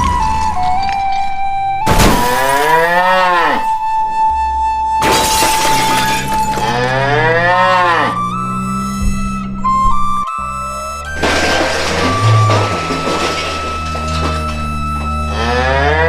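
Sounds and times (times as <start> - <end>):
background music: 0.0 - 16.0
cow mooing: 2.3 - 3.8, 6.6 - 8.5, 15.3 - 16.0.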